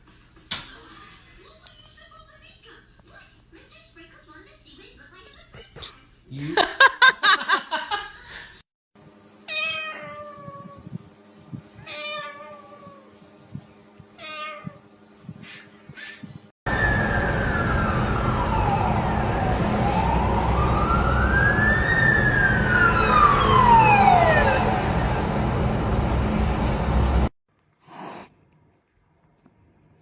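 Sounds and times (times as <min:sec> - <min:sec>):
cat meowing: 0:09.5 - 0:11.0, 0:11.8 - 0:13.1, 0:14.2 - 0:14.8
wailing siren: 0:16.7 - 0:26.0.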